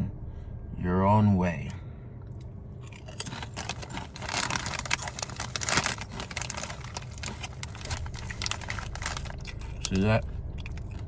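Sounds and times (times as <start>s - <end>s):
foil chip bag crinkling: 2.9s - 11.0s.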